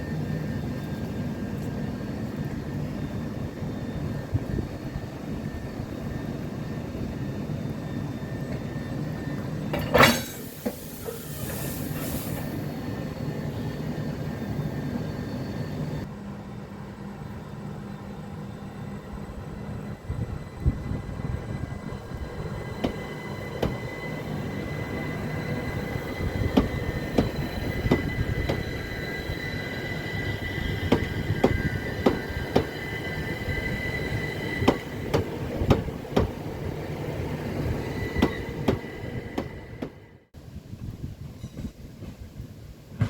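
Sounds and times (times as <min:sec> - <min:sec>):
train wheels squealing: 0:00.0 - 0:40.3, 0:41.3 - 0:42.2
low train rumble: 0:00.0 - 0:43.0
wheels clacking over rail joints: 0:26.4 - 0:28.8.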